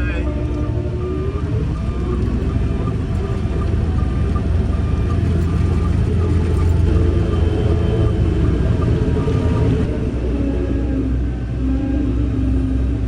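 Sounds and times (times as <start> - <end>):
short beeps: 0.0 - 9.9
diesel engine rumbling: 0.0 - 13.0.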